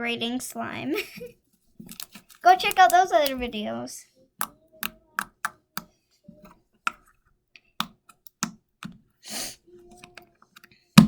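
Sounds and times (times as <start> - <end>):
slime squelch: 1.7 - 3.7, 4.4 - 10.2
slime popping clicks: 1.9 - 3.4.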